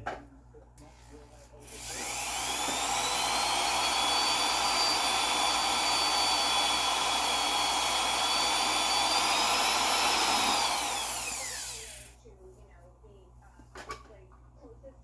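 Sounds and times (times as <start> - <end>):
electric drill whining: 1.6 - 12.2.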